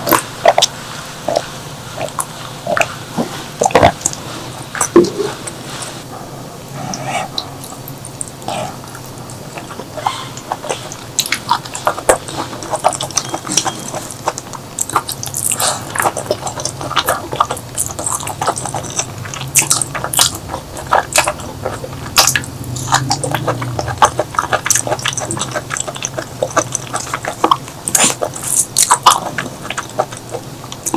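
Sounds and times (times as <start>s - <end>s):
person chewing food: 0.0s - 6.1s, 6.7s - 30.9s.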